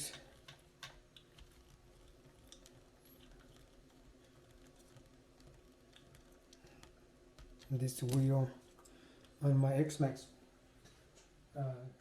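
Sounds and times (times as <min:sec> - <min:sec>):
faint clicks of small parts: 0:00.0 - 0:09.5
low steady hum: 0:00.0 - 0:12.0.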